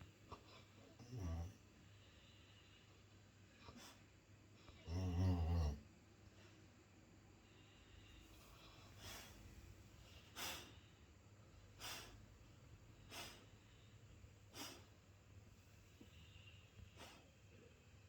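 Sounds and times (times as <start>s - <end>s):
dog snoring faintly: 0.2s - 1.7s, 4.6s - 5.9s.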